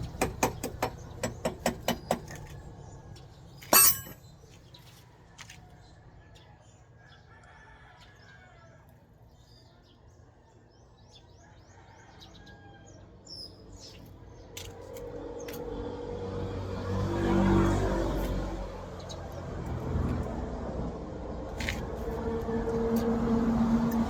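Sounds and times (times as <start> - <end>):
motor vehicle passing: 14.9 - 24.0.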